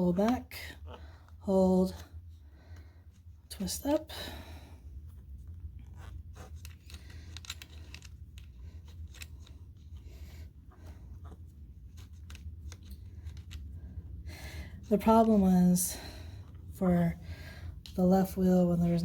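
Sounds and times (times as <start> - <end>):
steady low hum: 0.0 - 19.0
rubber cover rustling: 4.8 - 14.0.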